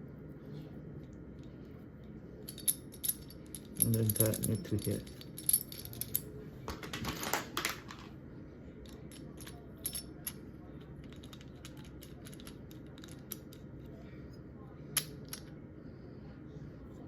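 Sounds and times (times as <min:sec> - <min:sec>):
metal parts clinking and clicking: 0:02.4 - 0:08.1, 0:08.8 - 0:10.4, 0:11.0 - 0:13.7.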